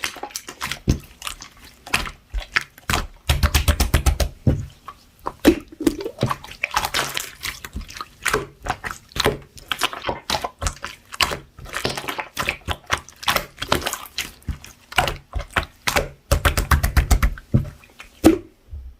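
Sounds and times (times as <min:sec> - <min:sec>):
slime squished by hand: 0:00.0 - 0:18.6.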